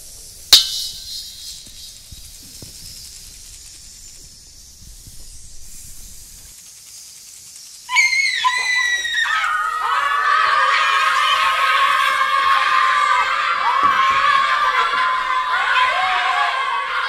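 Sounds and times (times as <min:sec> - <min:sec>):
child screaming: 0:07.9 - 0:17.0
group of children screaming: 0:07.9 - 0:17.0.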